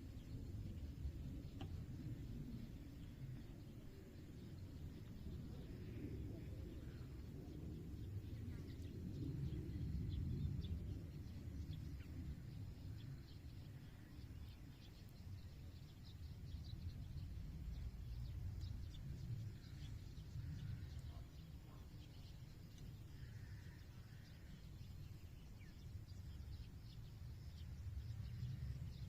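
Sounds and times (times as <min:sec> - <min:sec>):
low fluctuating rumble: 0:00.0 - 0:29.0.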